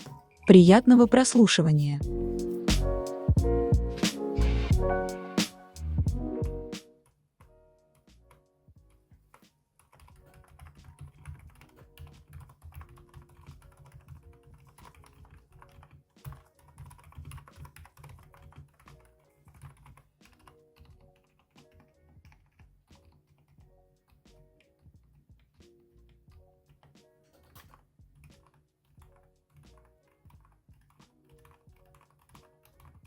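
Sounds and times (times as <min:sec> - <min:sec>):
soft background music: 0:00.0 - 0:33.0
soft damped keyboard keystrokes: 0:09.8 - 0:23.6, 0:26.7 - 0:33.0.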